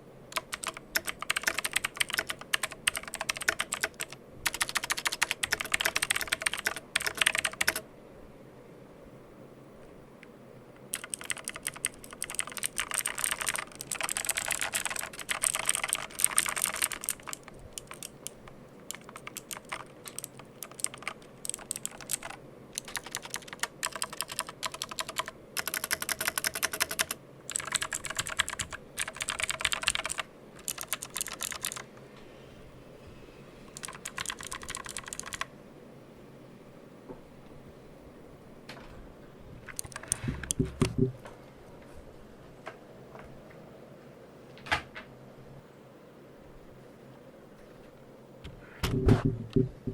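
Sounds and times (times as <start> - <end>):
mechanical keyboard typing: 0.3 - 7.8, 10.8 - 31.9, 33.7 - 35.5, 39.7 - 41.1.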